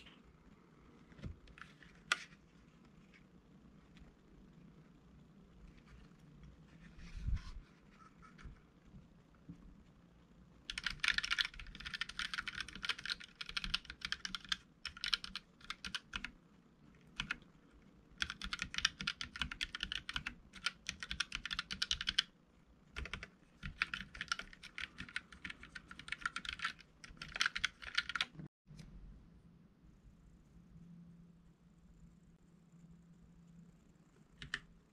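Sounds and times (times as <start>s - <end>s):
keyboard keys clicking: 10.7s - 16.3s, 18.2s - 22.3s, 23.0s - 28.4s.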